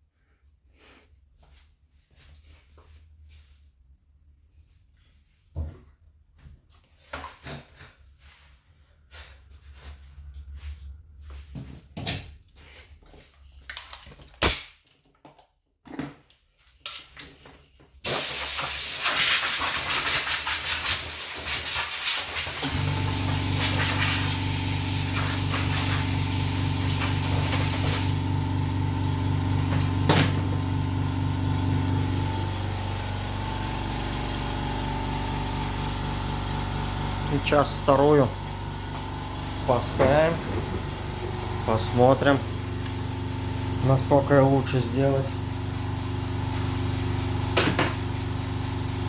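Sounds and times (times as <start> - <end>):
loud steady hiss: 18.1 - 28.2
motor humming: 22.6 - 49.0.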